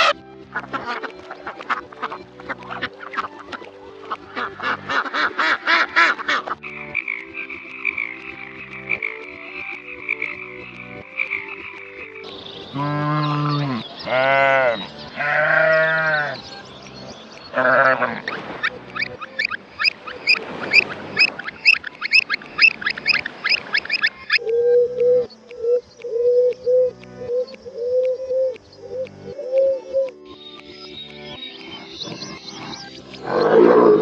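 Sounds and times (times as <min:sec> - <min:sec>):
steady background sounds: 0:00.1 - 0:34.0
farm animal calling: 0:12.7 - 0:16.4, 0:17.5 - 0:25.2, 0:32.0 - 0:34.0.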